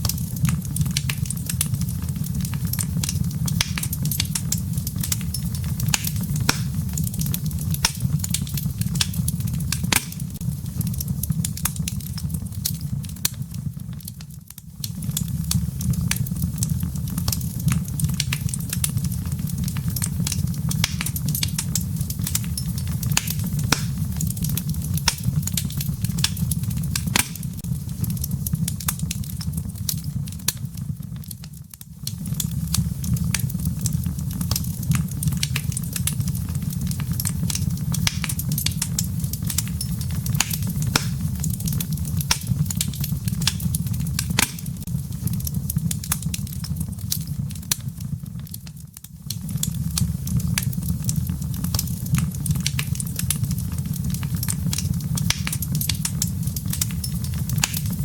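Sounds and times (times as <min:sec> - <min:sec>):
wood fire crackling and popping: 0:00.0 - 0:58.0.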